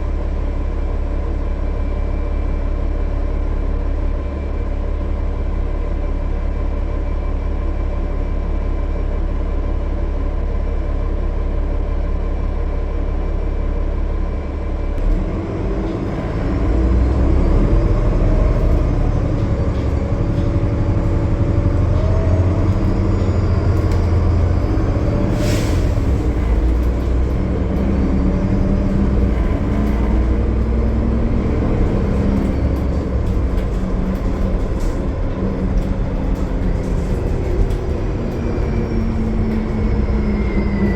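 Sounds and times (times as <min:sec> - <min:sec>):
bus diesel engine running: 0:00.0 - 0:40.9
rising engine whine: 0:14.5 - 0:40.9.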